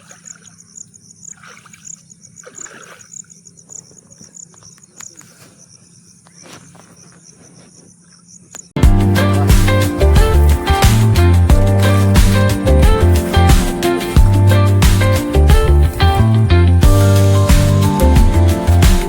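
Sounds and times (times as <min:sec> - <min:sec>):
water splashing and sloshing: 0:00.0 - 0:05.7
insects chirping: 0:00.0 - 0:11.2.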